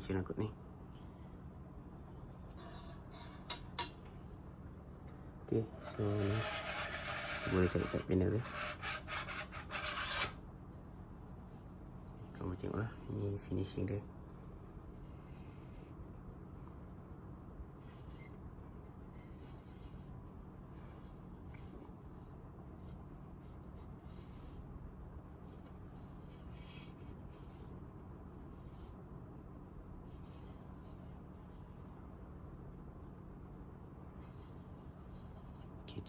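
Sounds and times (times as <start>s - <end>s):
steady low hum: 0.0s - 36.0s
hands rubbing a pc case: 5.8s - 10.4s.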